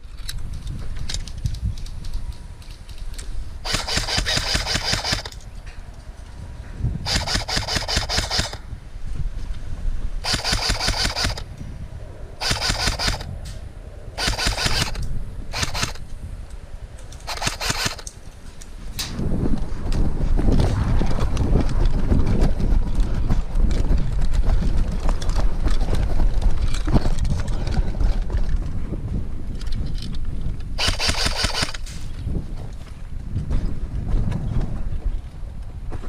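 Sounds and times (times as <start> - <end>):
steady low rumble: 0.0 - 36.0
airsoft guns firing bursts: 3.6 - 5.4, 7.0 - 8.6, 10.2 - 11.5, 12.4 - 13.3, 14.2 - 16.0, 17.2 - 18.1, 30.8 - 31.9.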